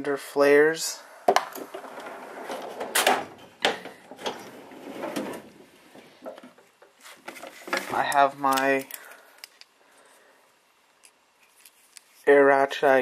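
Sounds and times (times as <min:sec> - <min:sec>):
steel drawers sliding: 0:01.5 - 0:06.1.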